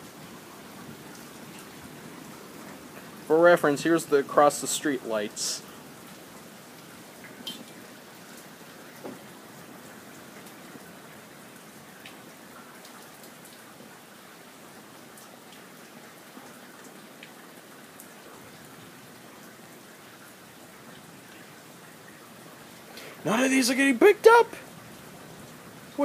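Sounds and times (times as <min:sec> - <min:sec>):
rain hissing: 0:00.0 - 0:26.0
raindrops tapping: 0:07.1 - 0:11.2.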